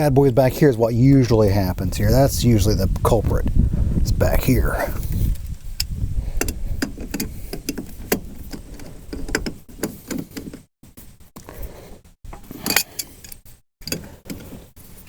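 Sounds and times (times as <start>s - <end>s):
tools clicking on battery terminals: 5.4s - 10.6s, 12.3s - 14.5s.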